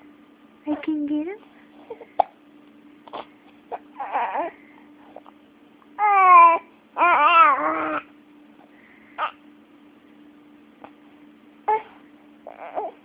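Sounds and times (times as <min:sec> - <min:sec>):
baby crying: 0:03.1 - 0:04.6, 0:06.0 - 0:08.1, 0:12.5 - 0:13.0.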